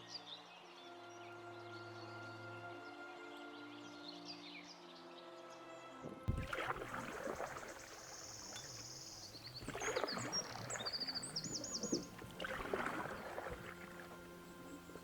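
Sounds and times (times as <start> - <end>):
paddle strokes in water: 6.3 - 15.0
bird chirping and trilling: 7.7 - 13.9.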